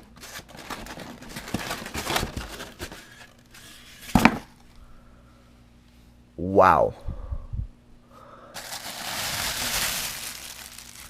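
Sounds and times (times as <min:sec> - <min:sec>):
cardboard scraping and rustling: 0:00.2 - 0:04.5.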